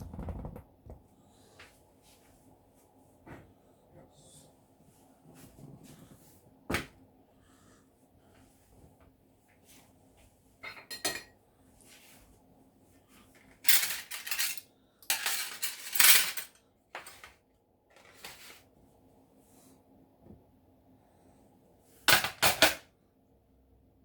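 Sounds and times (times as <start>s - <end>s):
dishes and cutlery clattering: 10.6s - 11.4s, 13.6s - 17.3s.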